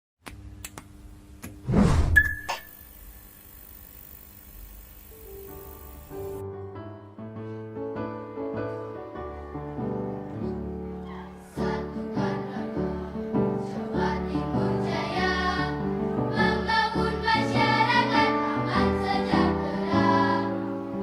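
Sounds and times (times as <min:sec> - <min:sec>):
piano accompaniment: 0:05.3 - 0:21.0.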